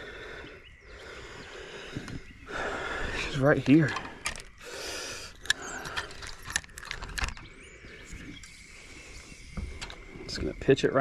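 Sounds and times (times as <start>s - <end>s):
fishing tackle clicking and rattling: 5.3s - 7.5s.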